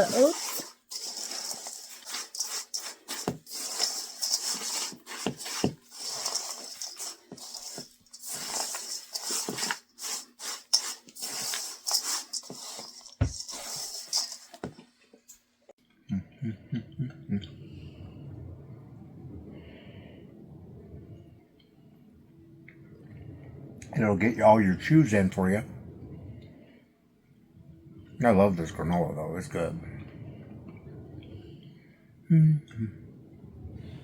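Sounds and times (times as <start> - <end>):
utensil scraping mixing bowl: 0.0 - 14.8.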